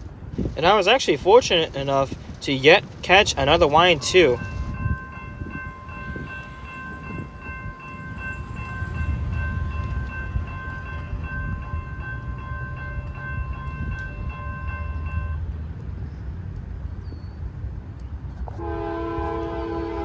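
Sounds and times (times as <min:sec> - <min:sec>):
diesel locomotive rumble: 0:00.0 - 0:20.0
pulsing warning tone: 0:03.1 - 0:15.4.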